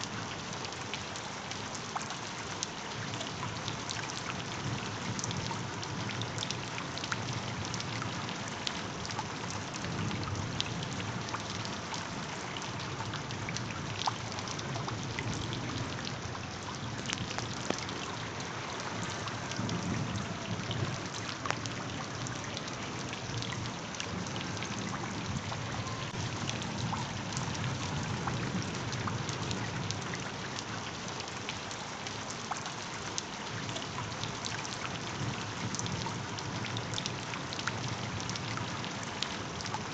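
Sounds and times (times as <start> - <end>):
steady rain: 0.0 - 39.9.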